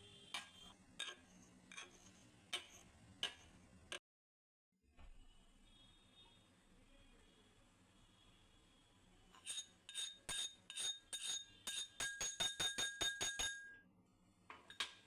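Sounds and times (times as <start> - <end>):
spoon clinking against cup: 9.4 - 13.8.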